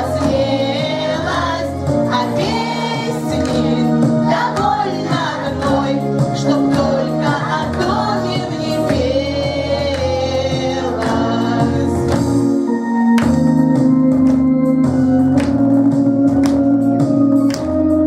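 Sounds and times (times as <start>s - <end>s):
percussion hits: 0.0s - 17.9s
organ-like keyboard chords: 0.0s - 18.0s.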